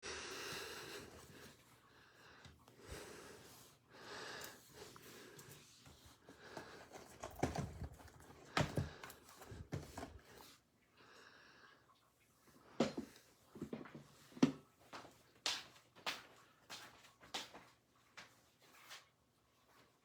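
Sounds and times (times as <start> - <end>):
breathing close to microphone: 0.0 - 7.5.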